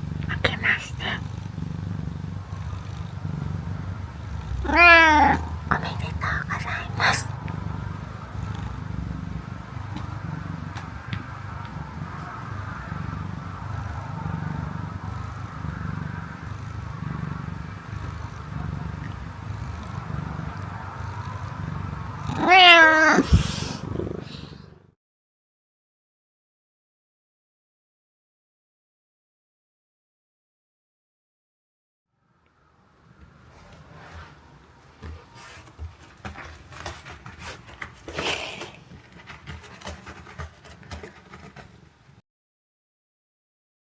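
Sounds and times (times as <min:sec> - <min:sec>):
cat purring: 0:00.0 - 0:25.0, 0:33.0 - 0:42.2
cat meowing: 0:04.4 - 0:07.4, 0:22.2 - 0:24.2.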